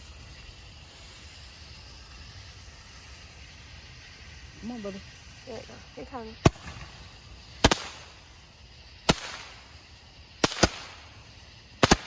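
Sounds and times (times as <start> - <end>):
fireworks bangs: 4.0 - 12.0.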